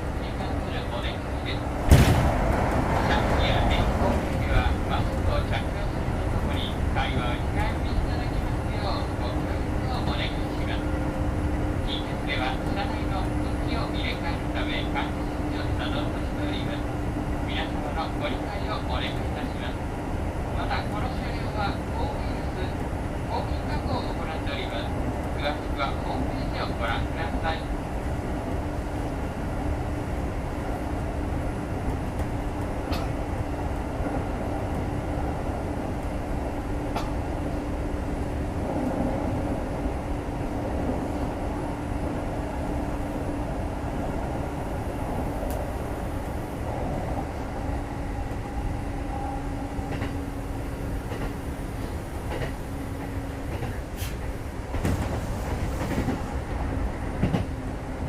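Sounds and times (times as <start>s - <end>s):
constant train hum: 0.0s - 58.0s
train wheels rumbling on rail: 0.0s - 58.0s
clacks over rail joints: 31.9s - 33.2s, 49.8s - 50.2s, 51.0s - 56.2s, 57.2s - 57.6s.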